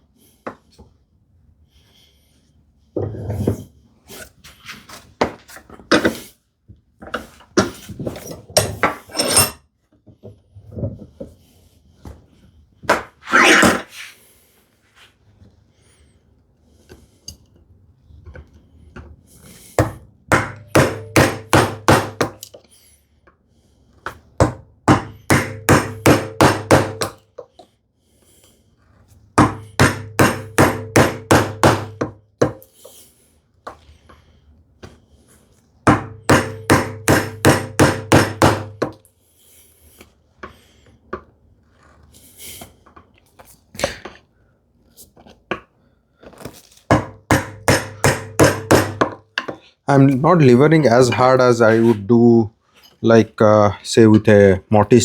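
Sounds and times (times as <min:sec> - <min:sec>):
mallet striking chisel: 0:19.8 - 0:22.4, 0:24.4 - 0:27.2, 0:29.4 - 0:32.7, 0:35.9 - 0:39.0, 0:46.9 - 0:49.6
chisel scraping in wood: 0:51.2 - 0:52.0.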